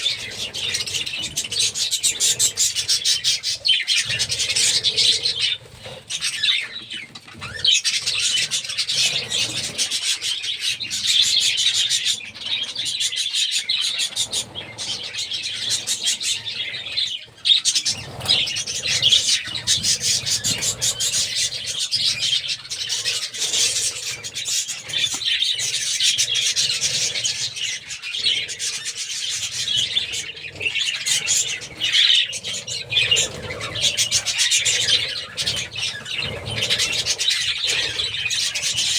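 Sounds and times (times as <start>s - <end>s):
budgerigars chattering and chirping: 0.0s - 38.9s
wings flapping: 17.7s - 27.4s.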